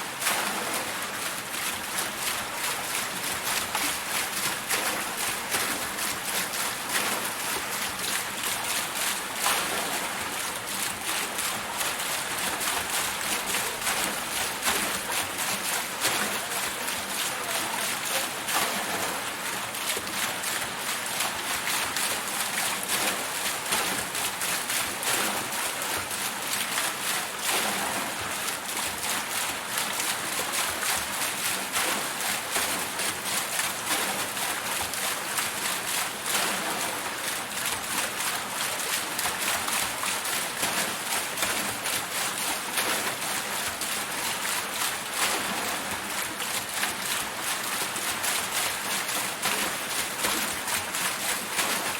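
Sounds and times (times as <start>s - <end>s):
rushing water: 0.0s - 51.9s
water wheel splashing: 0.0s - 51.9s.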